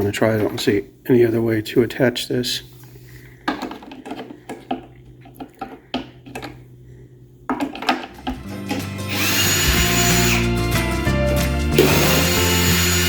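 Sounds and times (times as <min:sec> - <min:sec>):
power drill driving screws: 0:08.7 - 0:10.5, 0:11.8 - 0:13.0.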